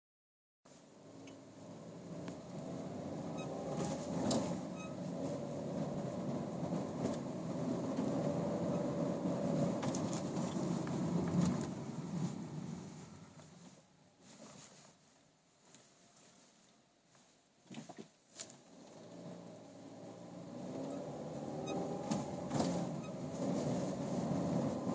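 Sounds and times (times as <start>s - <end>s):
car cabin road noise: 0.7s - 24.9s
faint speedometer squeaking: 3.1s - 5.4s, 8.5s - 9.0s, 20.7s - 24.0s.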